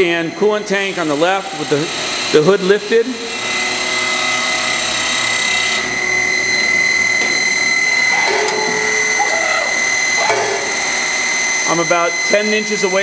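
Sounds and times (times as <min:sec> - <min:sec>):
lathe spindle whine: 0:03.1 - 0:13.0
high tones: 0:05.9 - 0:11.8.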